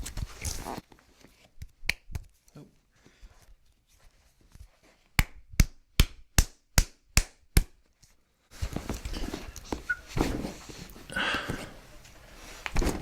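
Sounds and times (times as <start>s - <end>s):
rustling and movement: 0.0s - 5.2s, 7.8s - 13.0s
background hiss: 0.0s - 13.0s.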